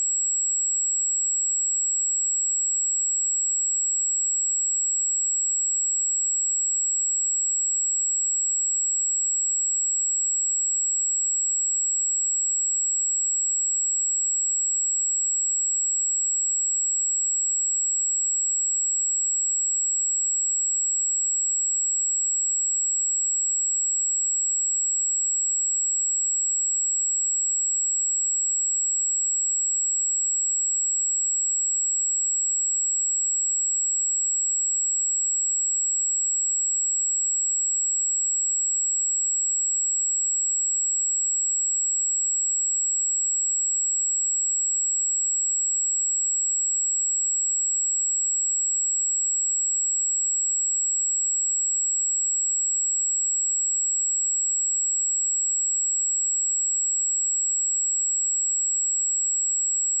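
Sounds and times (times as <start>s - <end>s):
high-pitched sine test tone: 0.0s - 60.0s.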